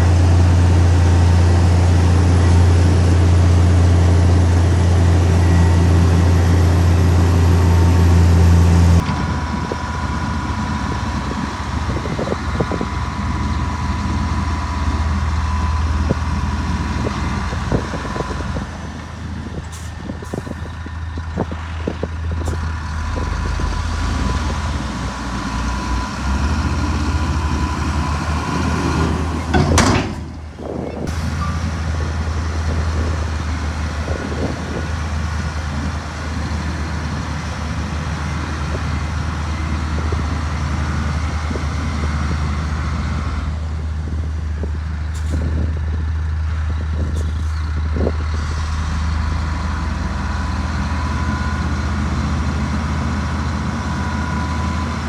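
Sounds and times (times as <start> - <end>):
diesel machinery engine rumble: 0.0 - 55.0
metal knocks and clanks: 29.4 - 31.6.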